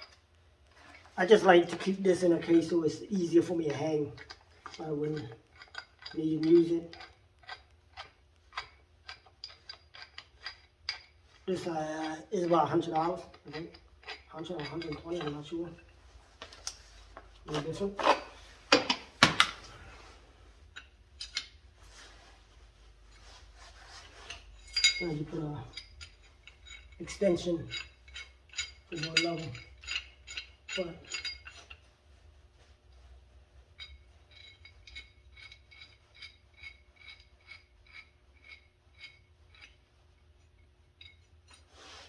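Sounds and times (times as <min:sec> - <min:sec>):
metal hand tools clinking: 0:01.6 - 0:20.0, 0:23.1 - 0:31.8.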